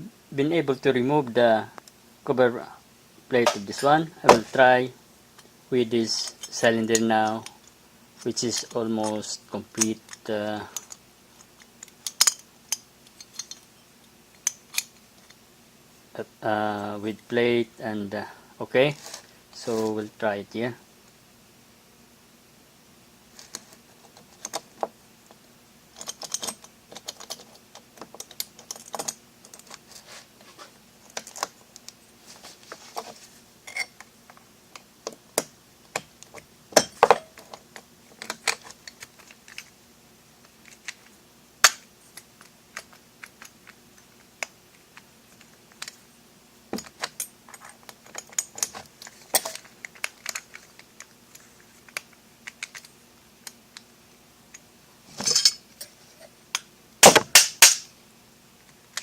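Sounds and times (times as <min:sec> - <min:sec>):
metallic lock clicks and clinks: 0:11.8 - 0:13.7.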